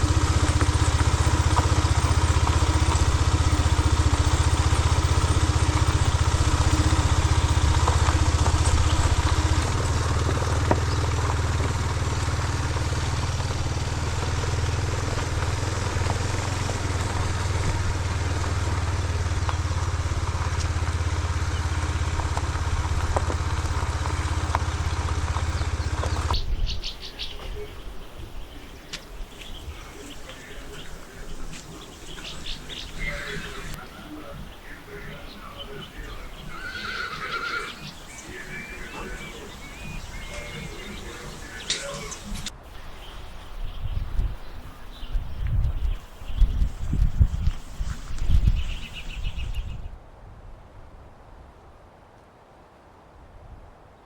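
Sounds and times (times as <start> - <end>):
birds chirping: 0.0 - 50.0
motorcycle engine running: 0.0 - 50.0.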